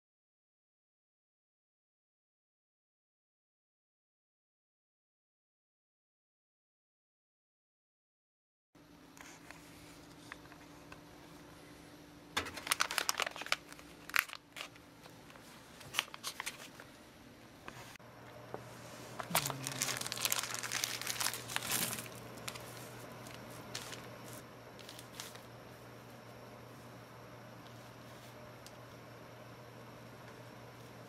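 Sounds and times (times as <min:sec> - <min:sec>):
packaging crinkling: 0:12.4 - 0:17.0, 0:19.1 - 0:25.5.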